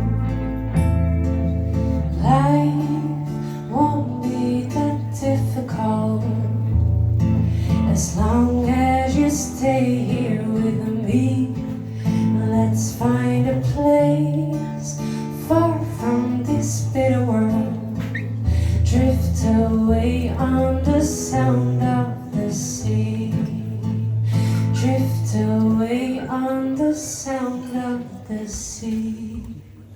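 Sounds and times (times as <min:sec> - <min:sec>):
held bass notes: 0:00.0 - 0:03.4
guitar: 0:00.0 - 0:29.9
woman singing: 0:02.1 - 0:29.9.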